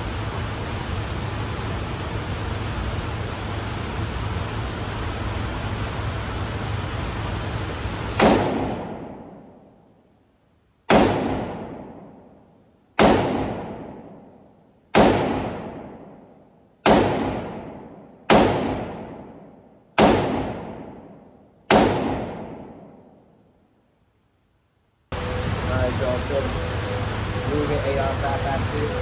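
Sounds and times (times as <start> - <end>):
gunshots with long echo: 8.1 - 9.9, 10.9 - 23.5
steady hiss: 23.8 - 29.0.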